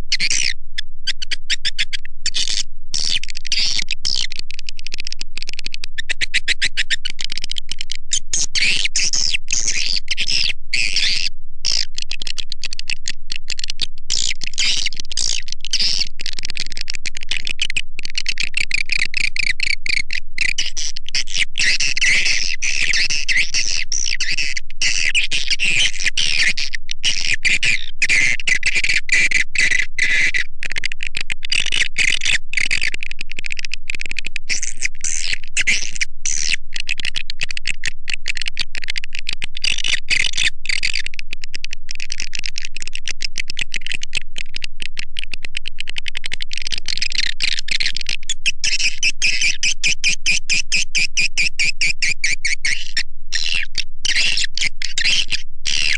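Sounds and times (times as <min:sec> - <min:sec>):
high-pitched bird chirps and twitters: 0:00.1 - 0:30.5, 0:34.5 - 0:37.8, 0:39.5 - 0:41.1, 0:46.5 - 0:55.9.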